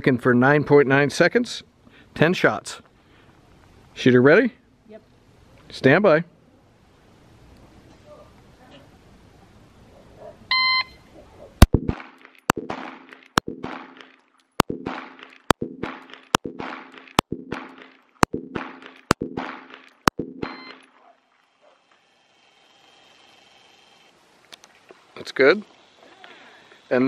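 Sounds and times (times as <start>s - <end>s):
shot timer beep: 10.5s - 11.0s, 20.1s - 20.9s
pistol shots with echo: 11.8s - 14.0s, 14.7s - 20.7s.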